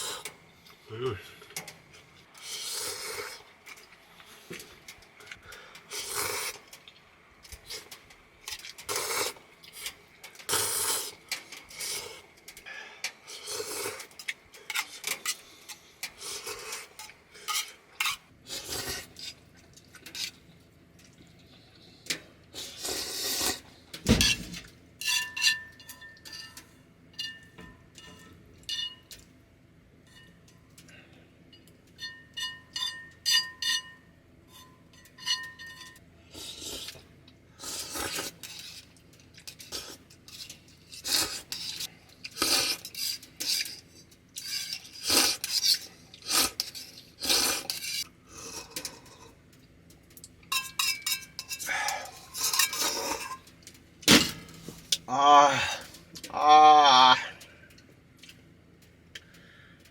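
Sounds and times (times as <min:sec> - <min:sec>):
utensils scraping dishes: 0:13.7 - 0:19.4, 0:24.2 - 0:29.0, 0:32.0 - 0:37.0, 0:37.8 - 0:49.4, 0:50.5 - 0:53.5
utensil clinking metal cup: 0:50.5 - 0:53.5.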